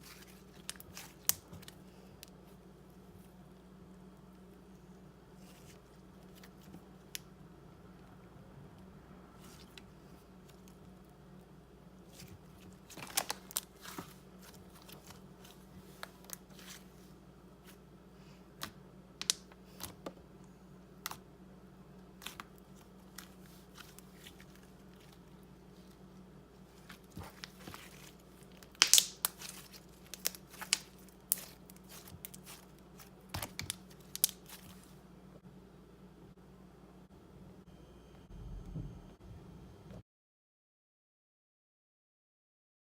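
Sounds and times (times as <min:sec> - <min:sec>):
slime popping and crackling: 0:27.0 - 0:34.8.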